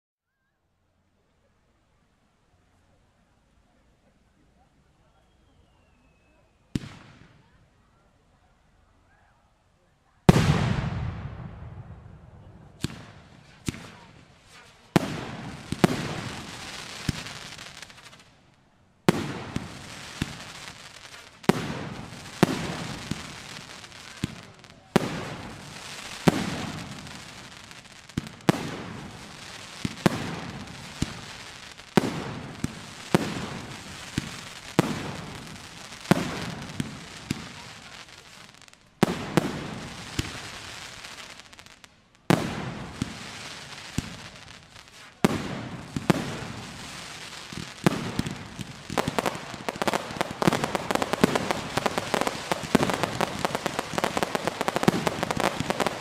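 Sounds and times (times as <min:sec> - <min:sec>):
firework crackle of small pops: 0:05.4 - 0:07.9, 0:10.2 - 0:56.0
firework shells bursting: 0:47.6 - 0:56.0.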